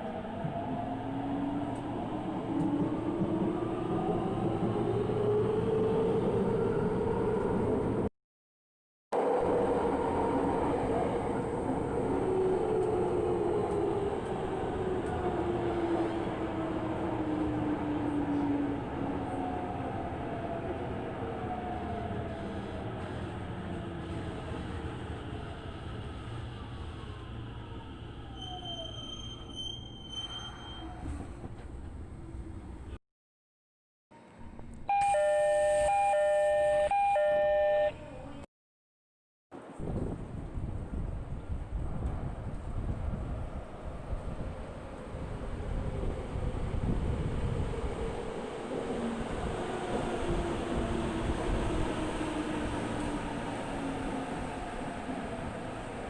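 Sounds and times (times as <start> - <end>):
high squeal: 28.2 - 31.1.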